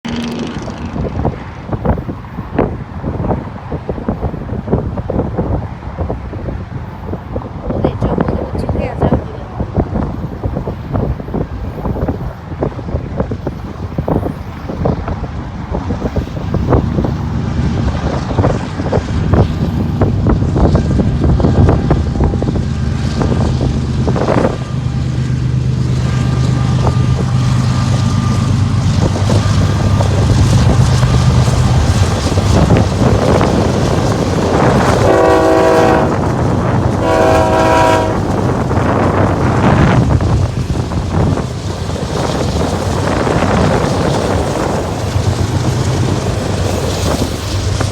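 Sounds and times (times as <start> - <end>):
multi-note air horn blasts: 35.0 - 36.2, 37.0 - 38.3.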